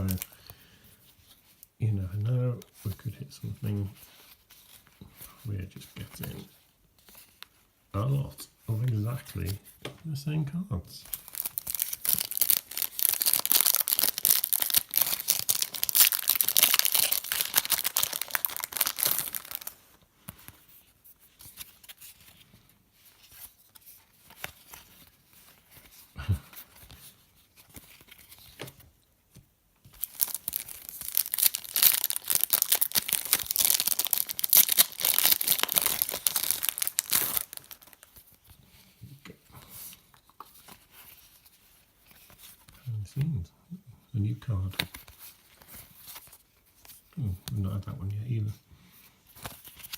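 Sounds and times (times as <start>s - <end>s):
wrappers tearing and crinkling: 0.0s - 0.4s, 11.1s - 20.0s, 29.9s - 38.4s
cards being handled: 2.6s - 10.0s, 11.0s - 43.3s, 44.5s - 49.9s.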